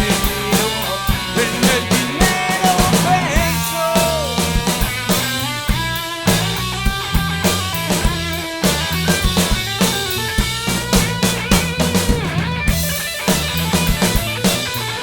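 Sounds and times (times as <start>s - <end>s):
distorted electric guitar: 0.0s - 7.4s, 11.2s - 13.3s
bass guitar: 0.0s - 15.0s
drum kit: 0.0s - 15.0s.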